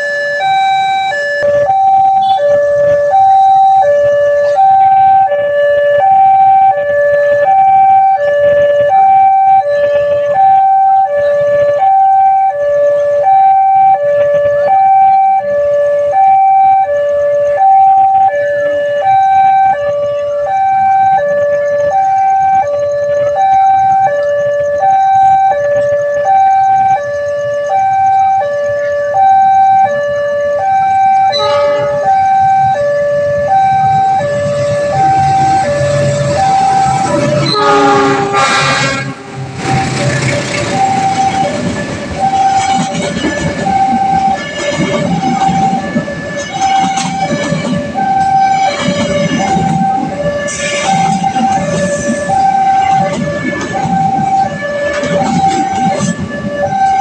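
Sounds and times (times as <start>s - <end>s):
two-tone crossing alarm: 0.0s - 57.0s
train rumble: 0.8s - 57.0s
train horn: 2.0s - 3.0s, 31.2s - 32.8s, 34.4s - 40.2s, 40.9s - 57.0s.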